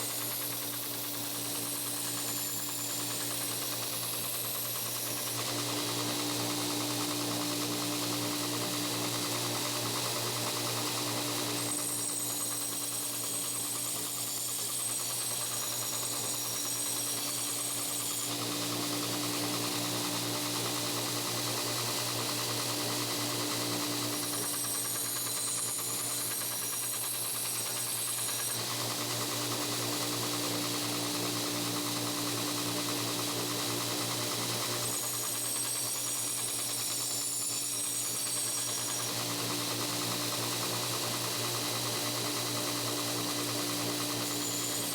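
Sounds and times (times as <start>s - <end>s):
hissing whine of blade on belt: 0.0s - 5.7s, 11.3s - 18.9s, 23.9s - 28.9s, 30.0s - 44.9s
belt grinder running: 0.0s - 44.9s.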